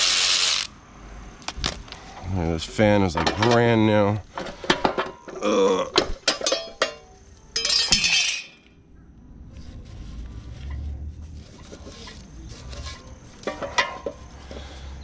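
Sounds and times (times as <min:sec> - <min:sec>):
metal tools clinking: 0:03.0 - 0:05.4, 0:06.0 - 0:08.7, 0:11.7 - 0:14.7.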